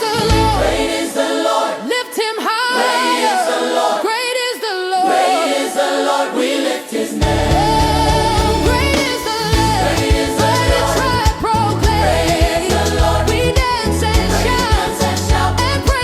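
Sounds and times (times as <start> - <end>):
voices singing in harmony: 0.0 - 16.0
band with bass and drums: 7.2 - 16.0.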